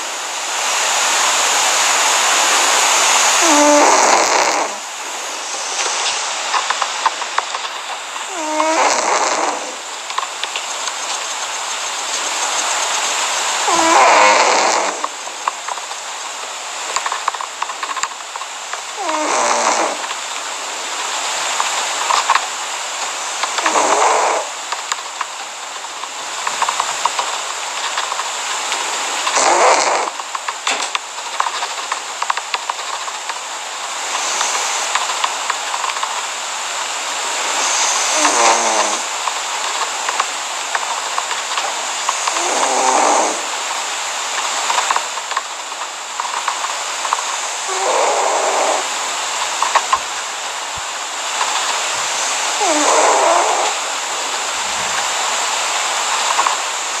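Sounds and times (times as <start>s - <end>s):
steady hiss: 0.0s - 57.0s
cat snoring loudly: 2.5s - 5.6s, 8.2s - 9.9s, 13.6s - 15.4s, 19.0s - 20.1s, 23.5s - 24.6s, 29.2s - 30.2s, 37.2s - 39.2s, 42.1s - 43.6s, 47.5s - 49.0s, 51.4s - 55.0s.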